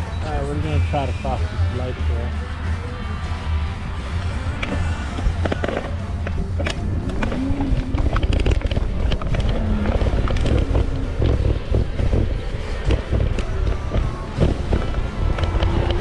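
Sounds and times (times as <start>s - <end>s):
background music: 0.0s - 16.0s
road traffic noise: 0.0s - 16.0s
steady low rumble: 0.0s - 16.0s
scattered clicks: 3.9s - 16.0s.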